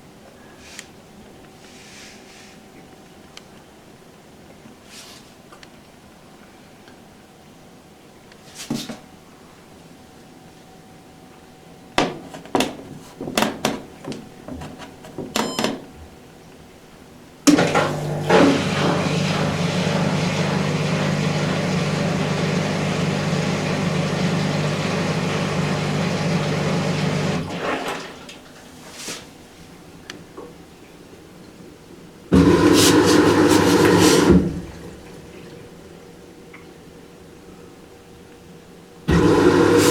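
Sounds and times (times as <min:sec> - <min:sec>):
washing machine clicks: 0:15.1 - 0:15.9
washing machine rushing and humming: 0:17.5 - 0:28.8, 0:32.3 - 0:36.4, 0:39.0 - 0:39.9.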